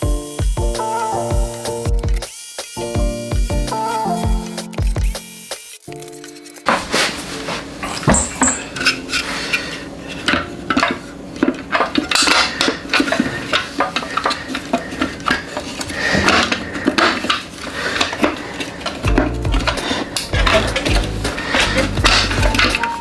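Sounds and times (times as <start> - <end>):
metal tools clinking: 6.7 - 23.0.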